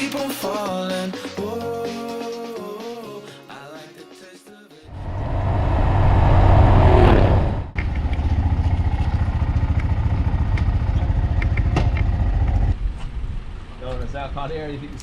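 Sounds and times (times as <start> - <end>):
loud rush of noise: 4.9 - 7.8
motorbike engine running: 5.0 - 12.8.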